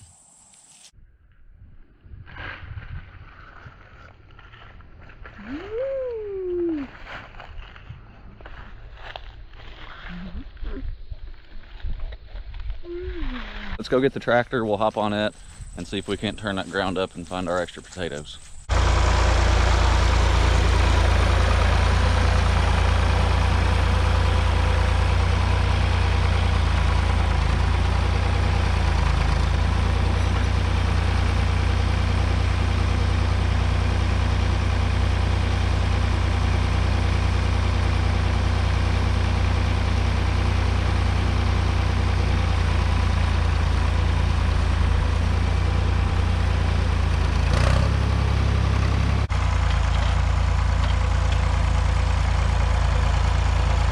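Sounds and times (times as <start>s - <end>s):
tractor engine running: 13.3s - 53.9s.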